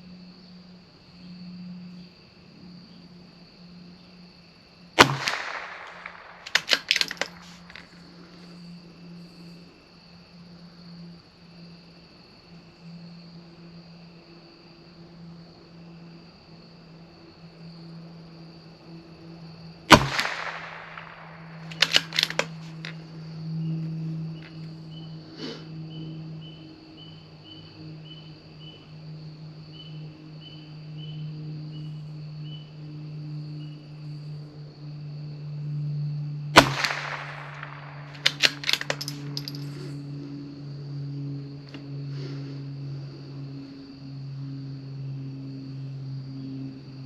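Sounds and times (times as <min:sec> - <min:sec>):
crickets chirping: 0:00.0 - 0:47.0
rifle bolt clicking: 0:05.0 - 0:07.9, 0:19.9 - 0:23.0, 0:36.6 - 0:39.6
rifle shots: 0:05.0 - 0:07.9, 0:19.9 - 0:22.9, 0:36.6 - 0:39.7.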